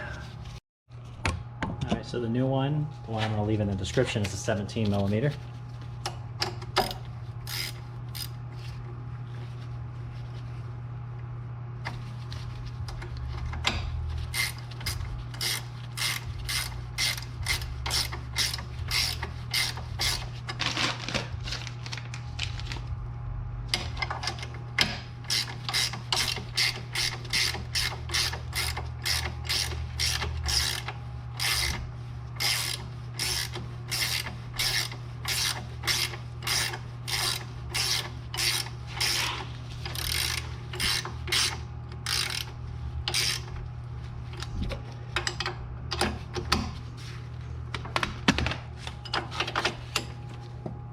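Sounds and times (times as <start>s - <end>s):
steady low hum: 0.0s - 50.9s
hand ratchet clicking: 6.8s - 8.3s, 13.0s - 20.3s, 23.8s - 31.8s, 32.4s - 42.5s, 43.1s - 43.5s.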